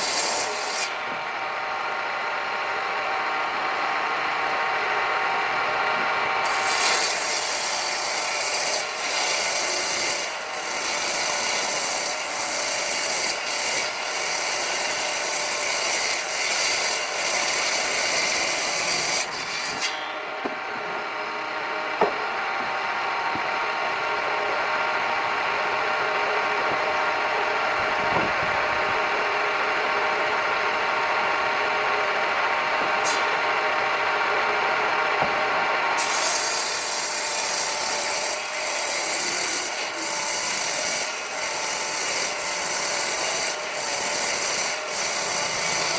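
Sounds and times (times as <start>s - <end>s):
machine hum: 19.3s - 36.1s.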